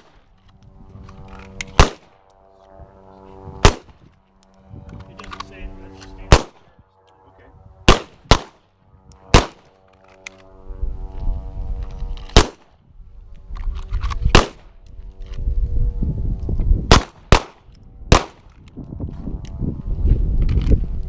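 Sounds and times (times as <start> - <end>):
low rumble: 0.0 - 21.0
pistol shots: 1.7 - 2.2, 3.6 - 3.9, 6.3 - 6.7, 7.9 - 8.6, 9.3 - 9.7, 12.3 - 12.7, 14.3 - 14.7, 16.9 - 18.4.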